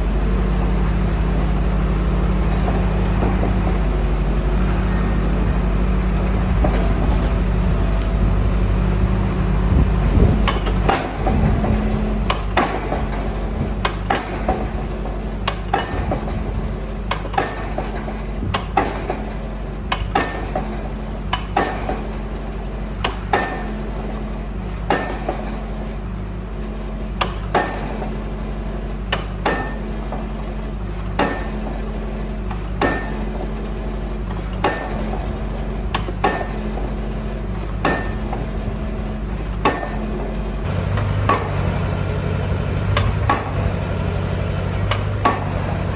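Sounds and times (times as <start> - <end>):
heavy machine engine running: 0.0 - 45.9
rhythmic metallic clank: 34.3 - 45.9.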